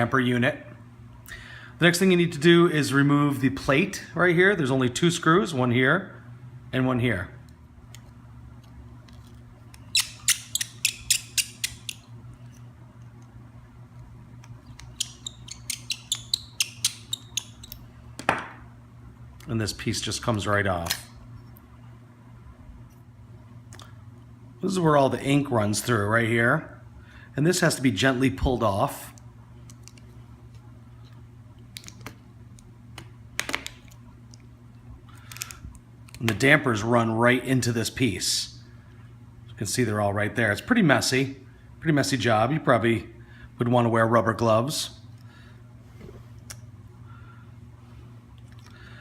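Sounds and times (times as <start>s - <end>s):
low steady hum: 0.0s - 49.0s
screwdriver squeaky clicks: 9.8s - 12.1s, 14.4s - 17.8s.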